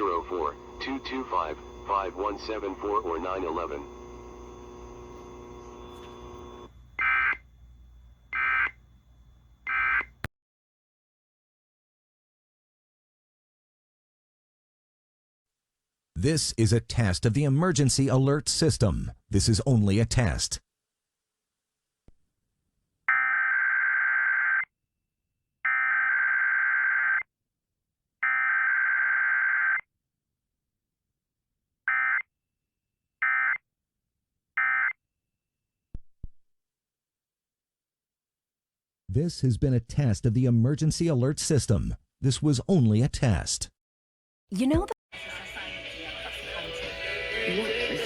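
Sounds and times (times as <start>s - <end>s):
steady broadcast hum: 0.0s - 10.2s.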